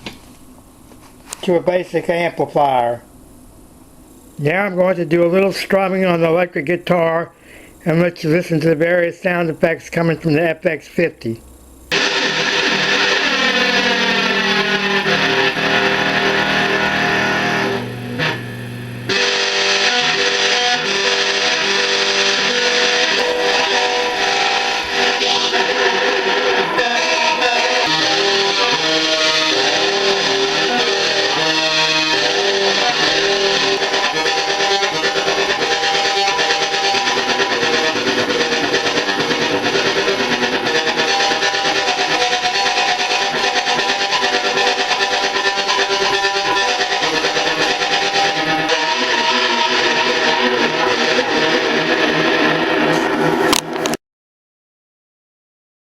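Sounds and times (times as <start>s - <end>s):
electric guitar notes with effect: 11.9s - 54.0s.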